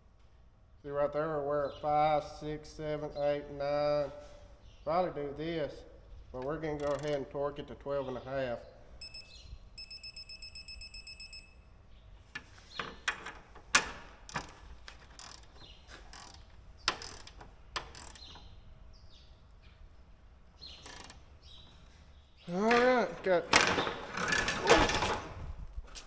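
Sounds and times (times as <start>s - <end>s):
torque wrench beeping: 9.0s - 11.6s.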